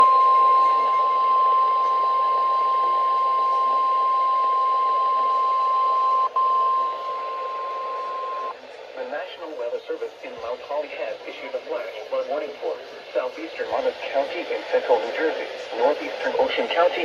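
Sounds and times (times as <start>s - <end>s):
steady high warning tone: 0.0s - 8.6s
radio hiss: 0.0s - 17.0s.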